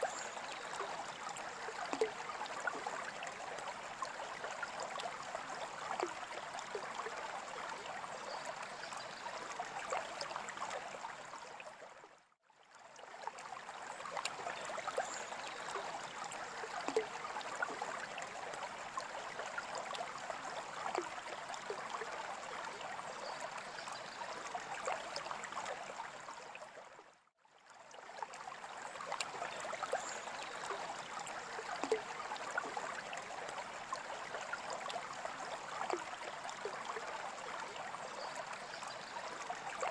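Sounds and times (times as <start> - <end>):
water drips: 0.0 - 5.3, 14.0 - 20.0, 20.8 - 22.8, 28.7 - 39.9
aquarium water trickling: 13.0 - 26.8, 27.8 - 39.9.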